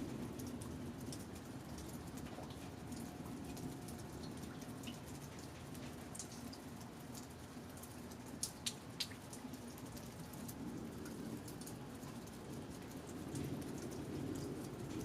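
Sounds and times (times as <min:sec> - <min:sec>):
steady rain: 0:00.0 - 0:15.0
water drops dripping: 0:00.4 - 0:10.6.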